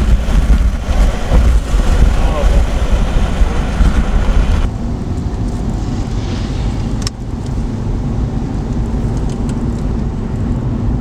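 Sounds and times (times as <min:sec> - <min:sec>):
hiss: 0:00.0 - 0:04.7
car road and engine rumble: 0:00.0 - 0:11.0.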